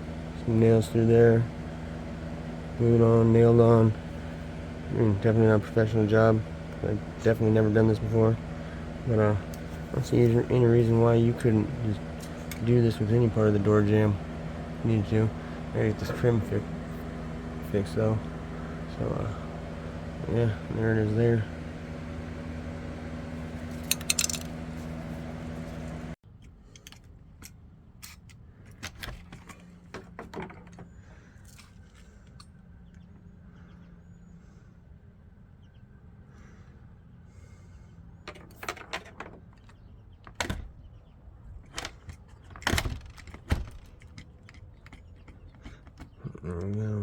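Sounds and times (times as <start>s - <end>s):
steady hum: 0.0s - 26.2s.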